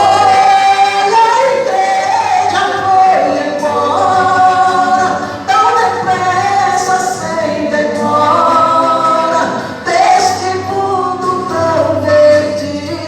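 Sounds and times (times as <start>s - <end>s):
two voices singing a hymn: 0.0s - 13.0s.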